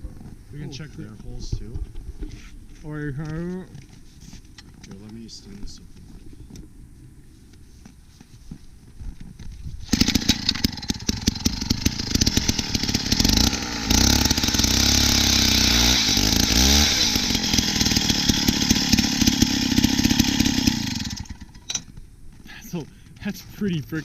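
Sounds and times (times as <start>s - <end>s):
ice auger engine drilling: 9.8s - 21.9s.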